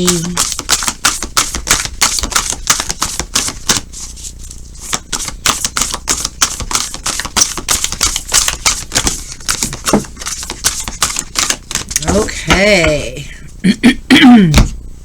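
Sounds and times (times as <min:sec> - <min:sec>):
cards being shuffled: 0:00.0 - 0:12.2.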